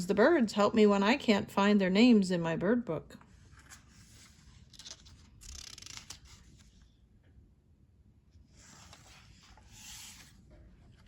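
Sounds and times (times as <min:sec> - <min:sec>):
paper pages rustling: 0:03.2 - 0:07.0, 0:08.4 - 0:11.0.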